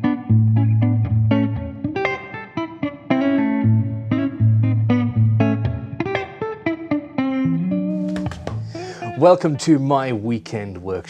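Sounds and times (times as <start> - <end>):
picked guitar notes: 0.0 - 11.0
long held bass notes: 3.5 - 6.0.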